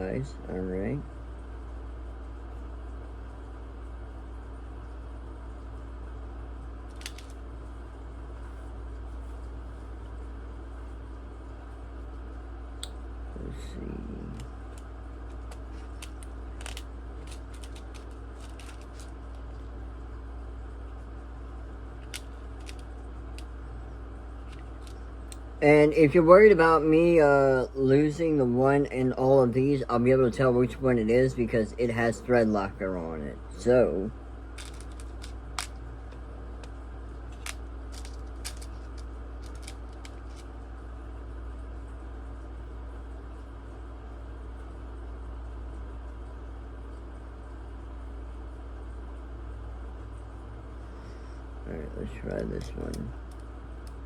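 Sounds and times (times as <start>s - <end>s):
steady low hum: 0.0s - 54.0s
tiny screws clicking: 6.9s - 7.3s, 34.6s - 35.8s, 37.3s - 40.4s
small screws and tools clicking: 34.6s - 35.8s.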